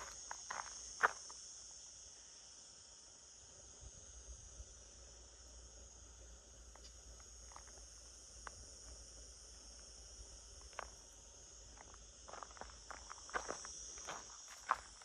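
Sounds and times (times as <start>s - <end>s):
crickets chirring: 0.0s - 15.0s
soft footsteps: 11.7s - 15.0s.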